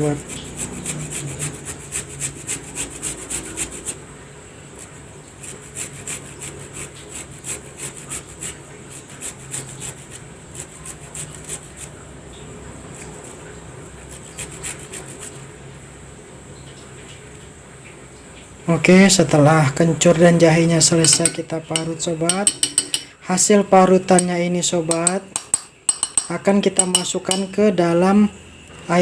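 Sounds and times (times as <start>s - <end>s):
ginger rasping on a grater: 0.0s - 4.0s, 4.8s - 12.0s, 14.0s - 15.4s, 24.1s - 26.2s, 26.8s - 27.5s.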